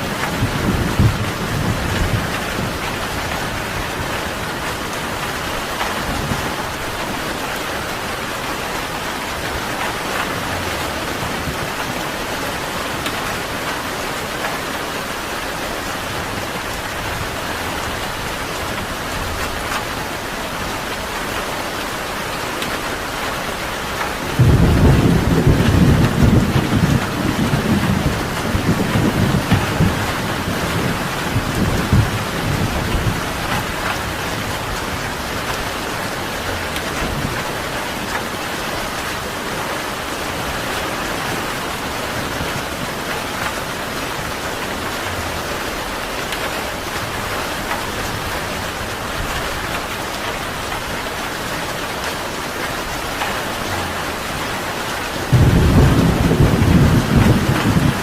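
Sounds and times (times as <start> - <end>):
low thunder rumble: 0.0 - 7.0, 24.3 - 38.2, 53.4 - 58.0
steady rain: 0.0 - 58.0.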